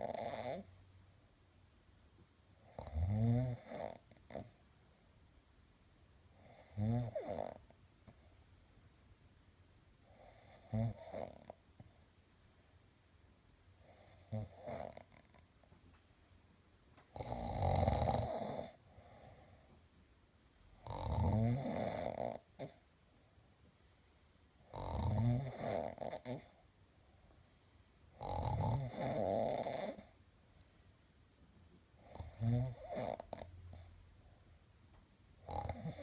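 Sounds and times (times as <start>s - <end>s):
loud snoring: 0.0s - 0.8s, 2.6s - 4.5s, 6.4s - 7.6s, 10.1s - 11.6s, 13.8s - 15.4s, 17.2s - 19.1s, 20.8s - 22.8s, 24.6s - 26.6s, 28.1s - 30.1s, 32.0s - 33.9s, 35.4s - 36.0s.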